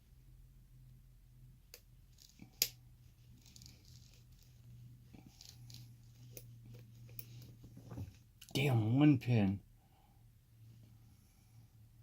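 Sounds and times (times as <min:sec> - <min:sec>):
lock pick scratching and clicking: 0:05.3 - 0:07.4.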